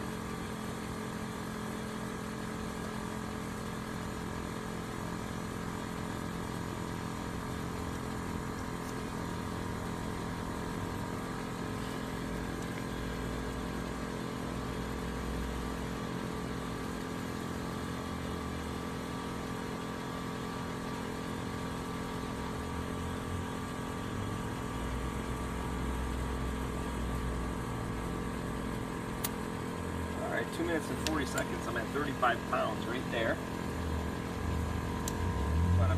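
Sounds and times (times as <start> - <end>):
air compressor humming: 0.0 - 35.9.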